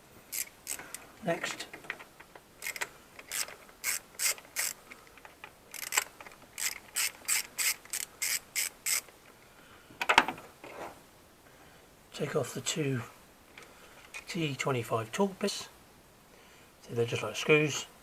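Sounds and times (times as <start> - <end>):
socket ratchet clicking: 2.6 - 4.8, 5.7 - 9.1.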